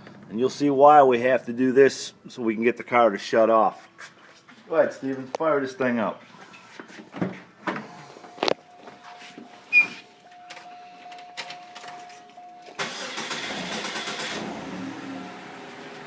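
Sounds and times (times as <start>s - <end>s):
thin steady tone: 8.0s - 12.8s
car engine idling: 10.6s - 16.0s
car engine cranking and starting: 11.2s - 16.0s.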